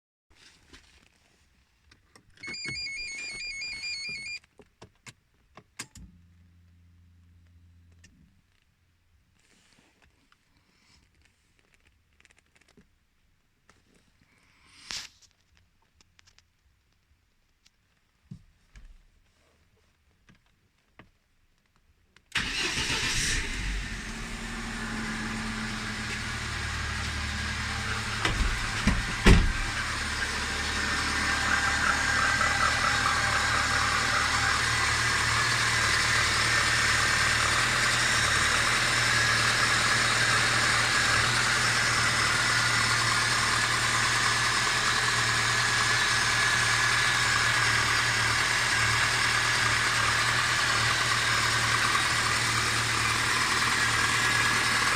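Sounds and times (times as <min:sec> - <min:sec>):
car engine starting and running: 0:02.1 - 0:04.4, 0:22.3 - 0:54.9.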